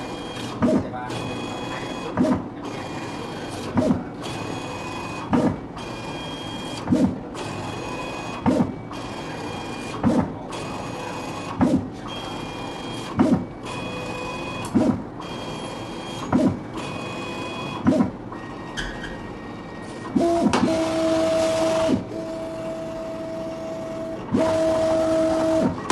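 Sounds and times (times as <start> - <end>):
plotter carriage high whine: 1.1 - 3.6.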